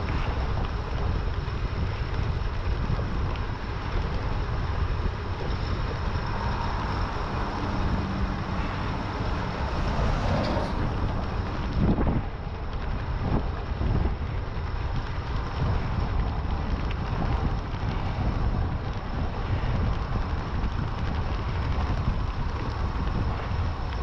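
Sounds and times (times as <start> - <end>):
wind buffeting microphone: 0.0 - 24.0.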